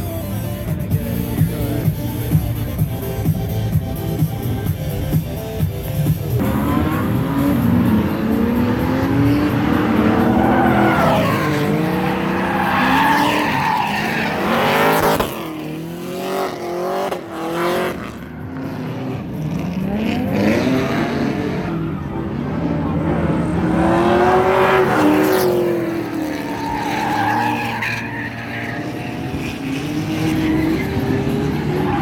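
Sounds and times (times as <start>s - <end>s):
car engines revving hard: 0.3s - 32.0s
tyres squealing: 9.5s - 15.2s, 25.8s - 32.0s.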